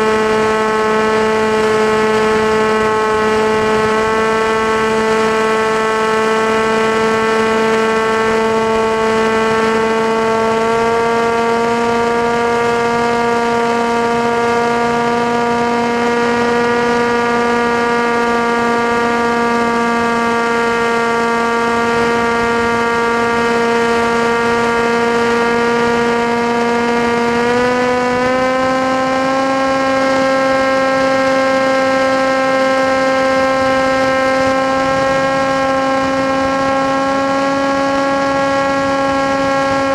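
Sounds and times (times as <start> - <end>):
model aircraft motor whine: 0.0 - 39.9.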